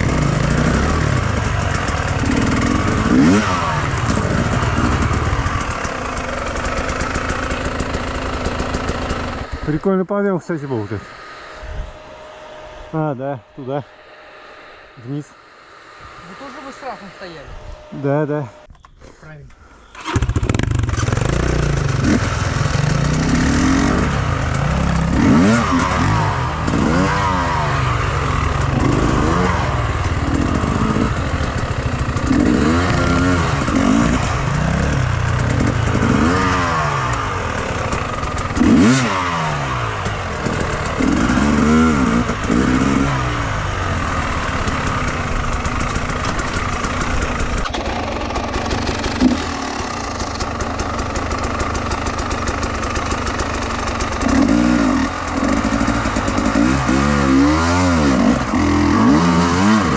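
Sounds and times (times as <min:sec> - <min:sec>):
motorcycle engine revving: 0:00.0 - 0:18.9, 0:19.8 - 0:59.9.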